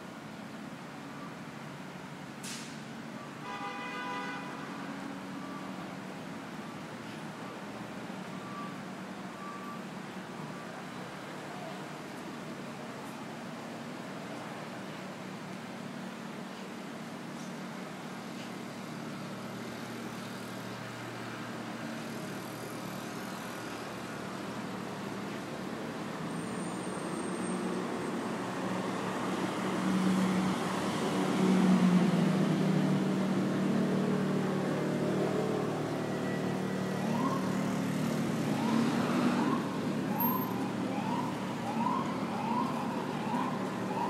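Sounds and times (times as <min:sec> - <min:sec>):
city street traffic: 0:00.0 - 0:44.0
vehicle engine humming: 0:16.3 - 0:44.0
siren whooping: 0:35.3 - 0:44.0.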